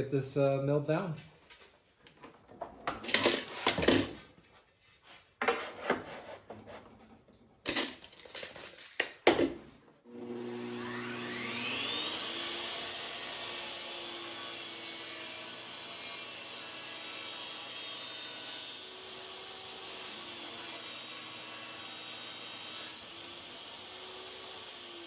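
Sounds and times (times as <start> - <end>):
table saw cutting wood: 10.1 - 25.0.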